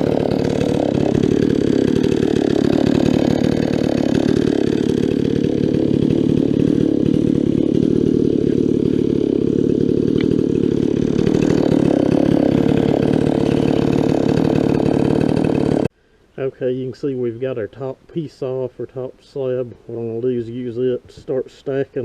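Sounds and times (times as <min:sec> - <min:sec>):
chainsaw cutting log: 0:00.0 - 0:15.9.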